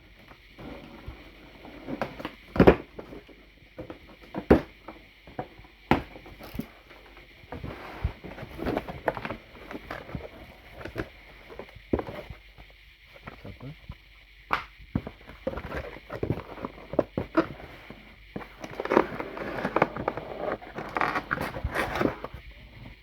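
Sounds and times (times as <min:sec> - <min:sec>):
faint steady hiss: 0:00.0 - 0:23.0
plastic parts knocking and clattering: 0:01.9 - 0:06.8, 0:14.5 - 0:22.4.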